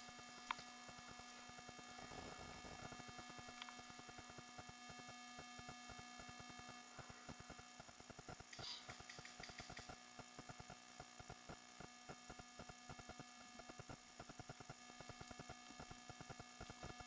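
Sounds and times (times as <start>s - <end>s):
faint electrical hum: 0.0s - 17.0s.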